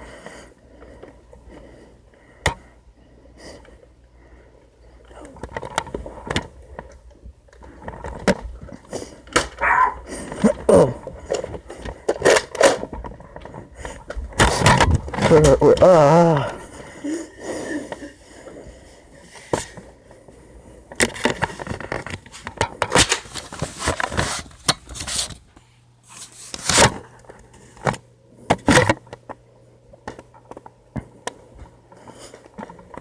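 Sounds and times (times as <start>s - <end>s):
low steady hum: 0.0s - 33.0s.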